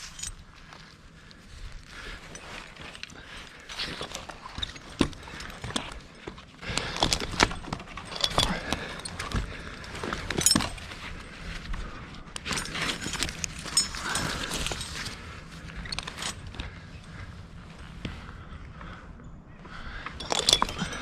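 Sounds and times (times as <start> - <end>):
metal gear jingling: 0.0 - 0.5, 2.1 - 11.4, 12.4 - 16.6, 20.2 - 21.0
handling knocks and rustling: 0.0 - 1.0, 1.8 - 16.9, 20.1 - 21.0.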